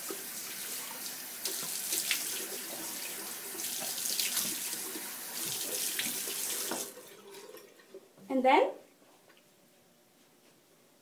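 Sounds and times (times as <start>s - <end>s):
tap water running into sink: 0.0s - 7.9s.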